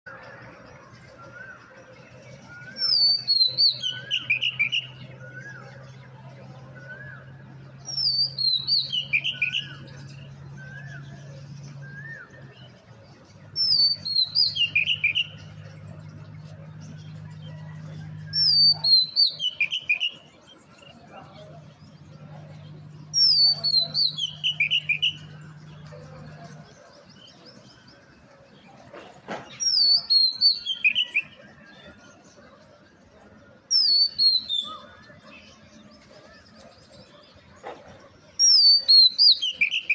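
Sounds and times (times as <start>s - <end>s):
songbird singing falling notes: 13.5s - 21.0s, 22.4s - 26.6s, 28.7s - 31.4s.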